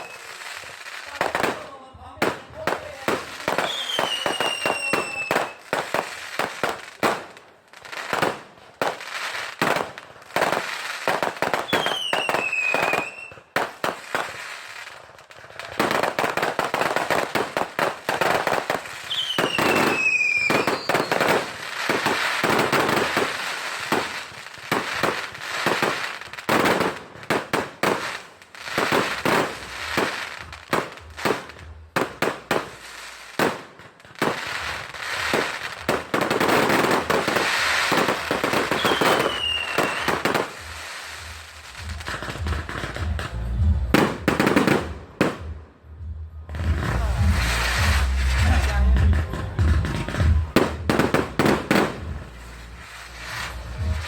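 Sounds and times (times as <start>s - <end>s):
fireworks whistles falling in pitch: 0.0s - 0.4s, 3.5s - 5.6s, 11.6s - 13.5s, 19.0s - 21.4s, 37.3s - 41.3s
fireworks bangs and crackling: 0.0s - 54.0s.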